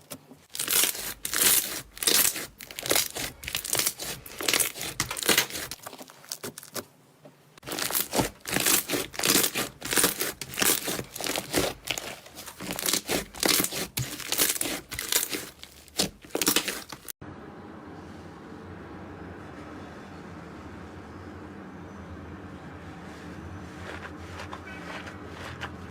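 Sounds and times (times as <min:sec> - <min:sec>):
slime crackling and popping: 0:00.5 - 0:06.8, 0:07.6 - 0:17.2.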